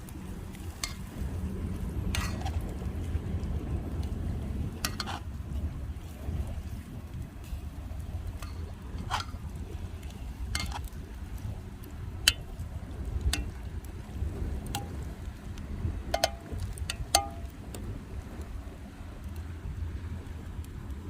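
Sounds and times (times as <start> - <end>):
wind rumbling on microphone: 0.0 - 21.0
cooking gear clicking and clinking: 10.4 - 11.0, 16.1 - 17.5.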